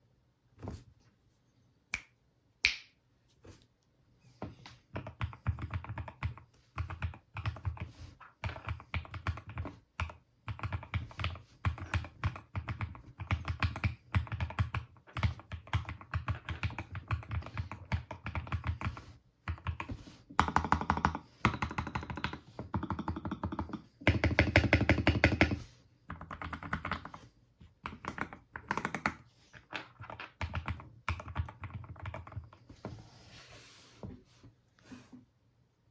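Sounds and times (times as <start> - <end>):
mechanical keyboard typing: 5.0 - 27.2, 27.8 - 32.5.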